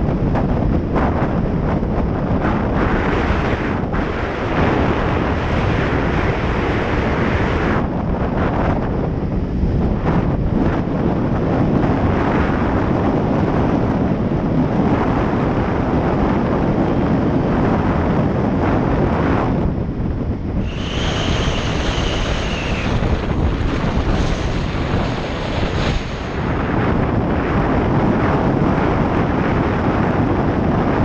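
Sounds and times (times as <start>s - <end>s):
wind buffeting microphone: 0.0s - 31.0s
steady high whistle: 20.6s - 23.3s.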